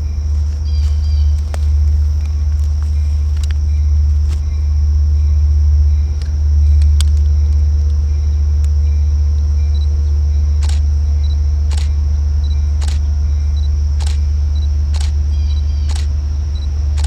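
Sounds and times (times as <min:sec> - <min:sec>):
diesel locomotive idling: 0:00.0 - 0:17.0
high-pitched buzz: 0:00.0 - 0:17.0
sharp clicks: 0:10.6 - 0:10.9, 0:11.7 - 0:12.0, 0:14.0 - 0:14.2, 0:14.9 - 0:15.3, 0:15.9 - 0:16.2.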